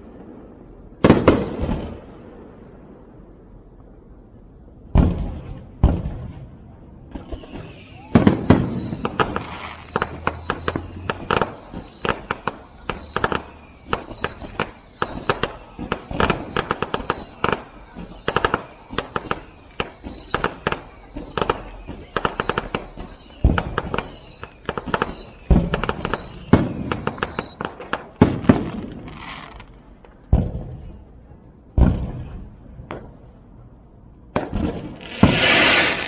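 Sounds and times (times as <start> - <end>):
firework booms: 0.0 - 3.6, 4.9 - 31.1, 31.7 - 33.3, 34.3 - 36.0
firework pops and crackling: 1.0 - 2.0, 7.1 - 30.7, 31.8 - 33.2, 34.3 - 36.0
high falling whistle: 7.2 - 27.7.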